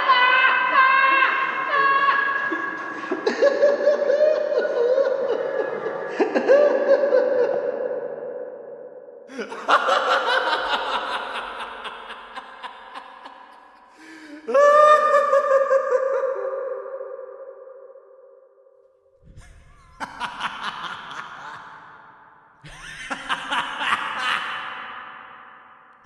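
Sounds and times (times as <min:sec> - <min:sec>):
hysterical laughter: 0:00.0 - 0:08.5, 0:09.3 - 0:17.9, 0:19.2 - 0:25.8.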